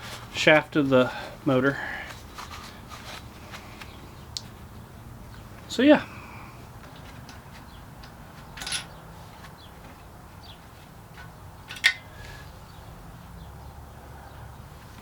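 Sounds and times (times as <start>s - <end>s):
sharp metal clink: 8.6s - 9.0s.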